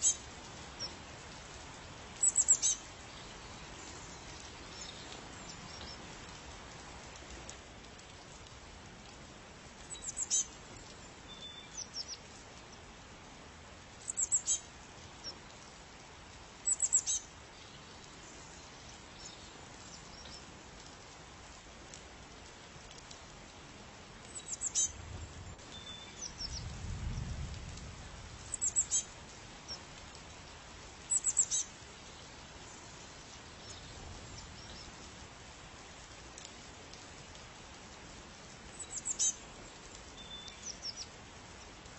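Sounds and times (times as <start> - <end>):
bird chirping: 2.2 - 2.8, 9.9 - 10.5, 14.1 - 14.6, 16.7 - 17.2, 28.5 - 29.0, 31.1 - 31.6, 38.8 - 39.4, 40.2 - 41.1.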